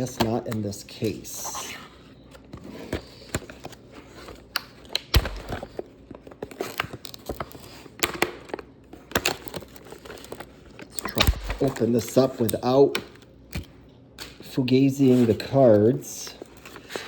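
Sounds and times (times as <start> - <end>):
plastic crinkling: 3.0 - 13.7.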